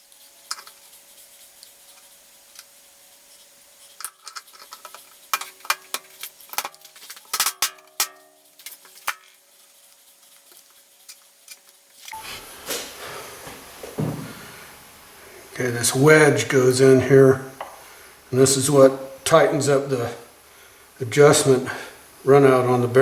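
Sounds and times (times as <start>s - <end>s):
faint steady hum: 12.0s - 23.0s.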